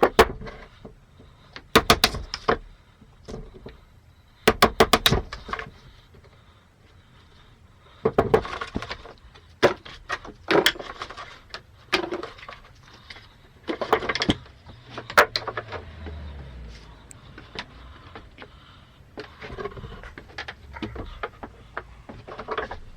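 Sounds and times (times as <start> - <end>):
wooden knocks and clatters: 1.6 - 3.8, 4.5 - 5.8, 8.0 - 16.2, 19.2 - 22.9.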